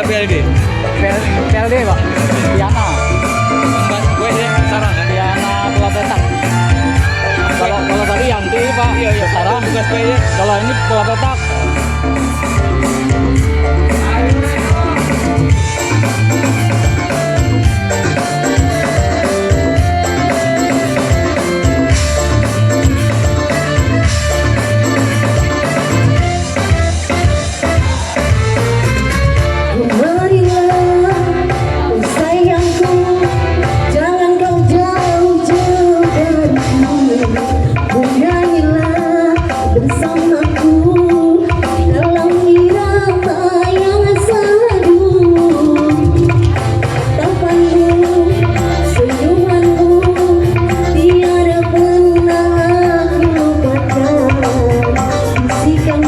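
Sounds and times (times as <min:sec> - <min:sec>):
loud music with bass beat: 0:00.0 - 0:32.5
gliding melody line: 0:00.0 - 0:56.0.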